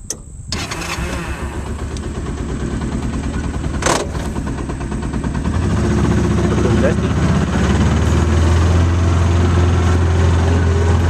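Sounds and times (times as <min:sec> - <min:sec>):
vehicle engine running: 0:00.0 - 0:11.0.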